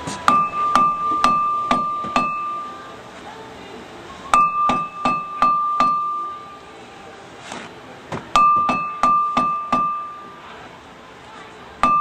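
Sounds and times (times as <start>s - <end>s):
hammer blows on metal: 0.0s - 2.9s, 4.3s - 6.7s, 8.3s - 10.4s, 11.8s - 12.0s.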